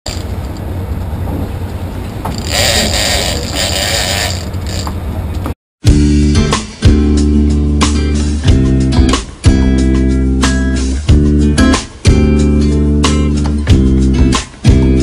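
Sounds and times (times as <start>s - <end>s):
boat engines droning: 0.1s - 5.6s
guitar music: 5.9s - 15.0s.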